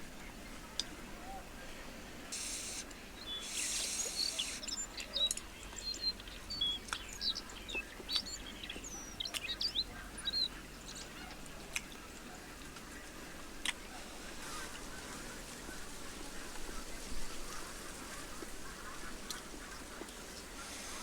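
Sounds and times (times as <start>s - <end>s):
small birds chirping: 0.1s - 21.0s
brief hiss: 2.3s - 4.7s.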